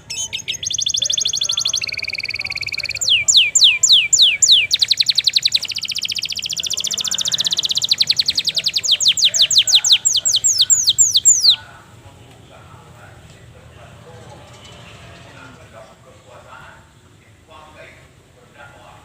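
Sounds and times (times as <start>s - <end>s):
canary singing: 0.0s - 11.7s.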